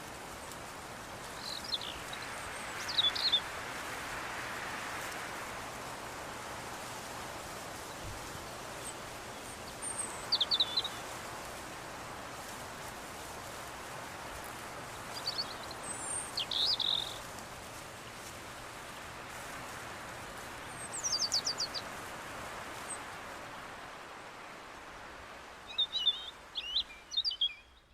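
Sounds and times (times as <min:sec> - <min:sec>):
steady rushing hiss: 0:00.0 - 0:27.3
birds calling: 0:01.3 - 0:03.5, 0:08.4 - 0:11.1, 0:15.1 - 0:17.4, 0:20.6 - 0:21.9.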